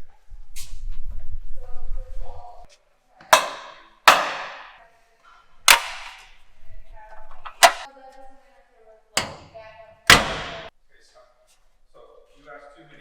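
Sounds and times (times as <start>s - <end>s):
magnets clacking onto steel wall: 3.2s - 4.8s, 5.7s - 6.4s, 7.2s - 7.9s, 9.2s - 10.7s.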